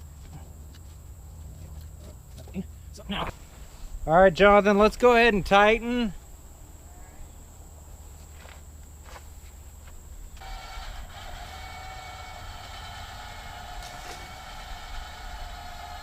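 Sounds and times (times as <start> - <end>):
winch whining: 10.4 - 16.0.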